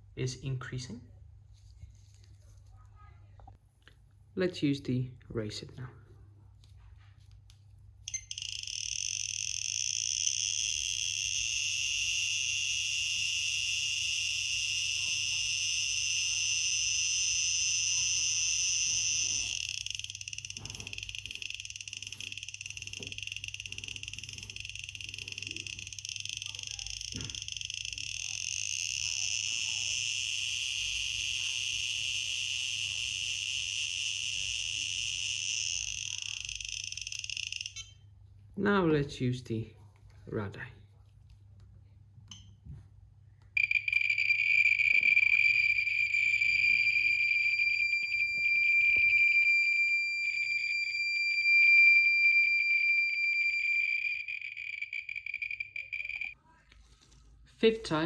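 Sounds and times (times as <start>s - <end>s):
radiation detector buzzing alarm: 8.1s - 38.1s, 43.6s - 56.4s.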